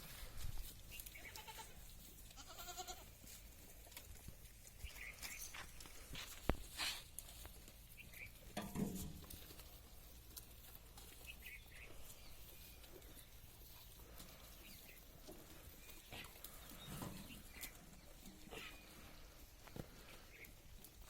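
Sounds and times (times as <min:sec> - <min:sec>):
goat bleat: 0:01.2 - 0:03.2.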